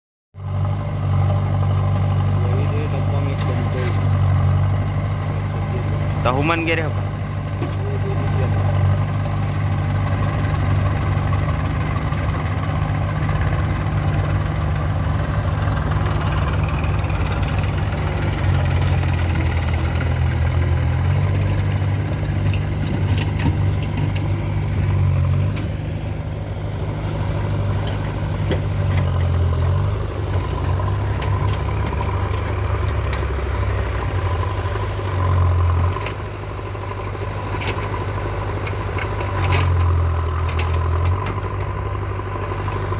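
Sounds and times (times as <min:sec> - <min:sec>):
engine idling: 0:00.4 - 0:42.9.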